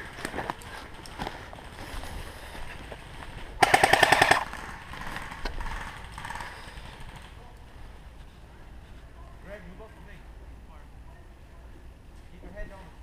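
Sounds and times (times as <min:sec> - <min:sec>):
airsoft gun full-auto burst: 0:03.6 - 0:07.2.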